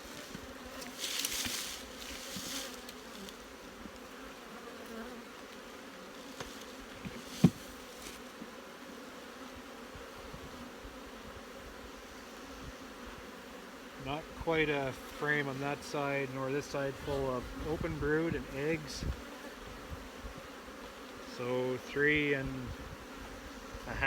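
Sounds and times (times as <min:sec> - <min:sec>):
rustling: 0:00.0 - 0:03.6
honey bees buzzing: 0:00.0 - 0:24.0.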